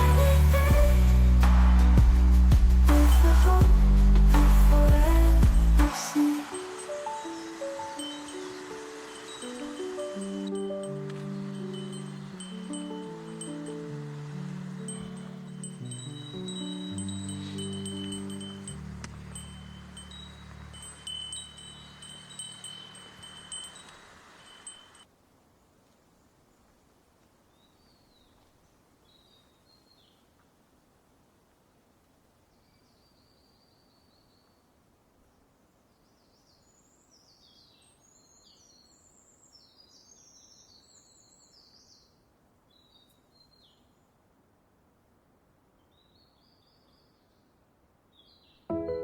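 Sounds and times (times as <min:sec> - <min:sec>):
faint outdoor ambience: 0:00.0 - 0:49.0
faint birdsong: 0:06.6 - 0:25.0, 0:27.4 - 0:30.4, 0:32.4 - 0:44.4, 0:45.7 - 0:49.0
tinkling chime tones: 0:06.6 - 0:25.0
low sustained music note: 0:07.3 - 0:23.3.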